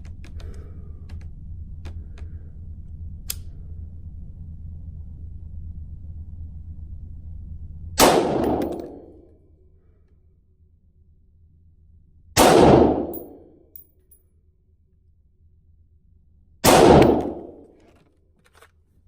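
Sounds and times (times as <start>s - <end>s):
rifle shots: 8.0s - 9.1s, 12.4s - 13.4s, 16.6s - 17.7s.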